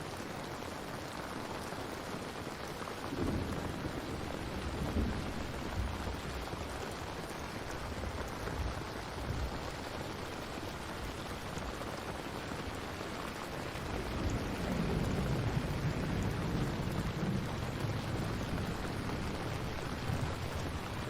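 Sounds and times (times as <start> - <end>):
steady rain: 0.0 - 21.0
rolling thunder rumble: 3.2 - 9.6, 13.7 - 21.0.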